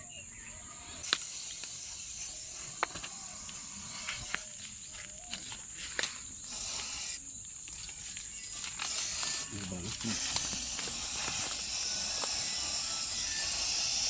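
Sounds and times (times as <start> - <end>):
high-pitched insect drone: 0.0 - 14.0
sharp clicks: 1.0 - 4.5, 5.9 - 14.0
short hiss: 5.9 - 7.4, 8.6 - 14.0.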